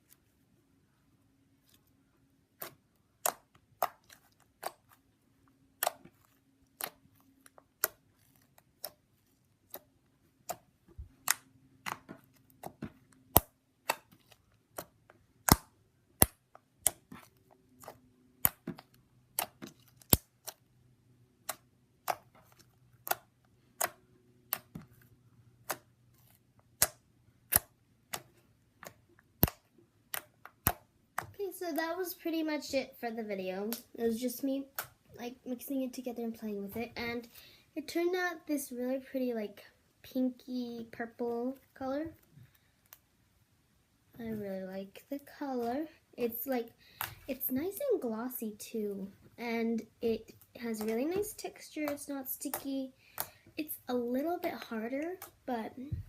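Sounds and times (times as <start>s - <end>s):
slime clicking and popping: 11.2s - 17.2s, 21.4s - 24.8s, 26.7s - 31.3s.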